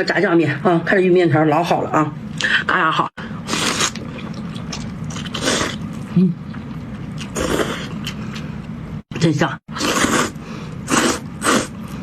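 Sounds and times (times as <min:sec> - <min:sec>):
noodle slurping: 0:09.7 - 0:12.0.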